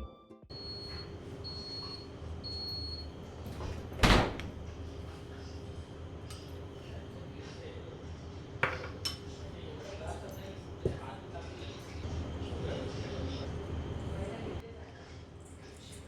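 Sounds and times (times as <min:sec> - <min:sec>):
appliance beeps: 0:00.0 - 0:04.6.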